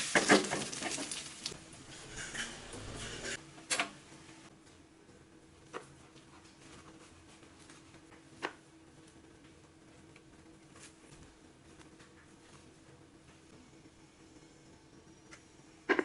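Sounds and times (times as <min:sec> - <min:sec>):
frying sizzle: 0:00.0 - 0:03.4.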